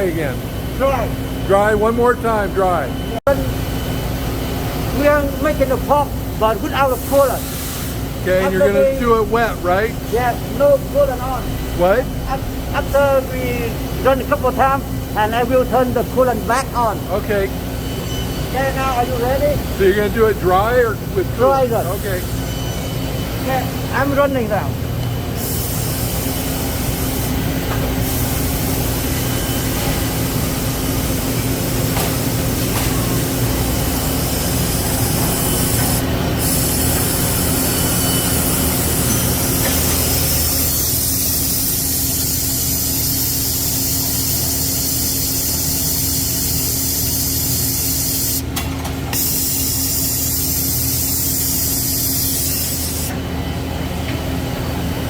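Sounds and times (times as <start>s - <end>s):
lathe machine hum: 0.0s - 55.0s
high hiss: 33.2s - 48.4s, 49.2s - 53.1s.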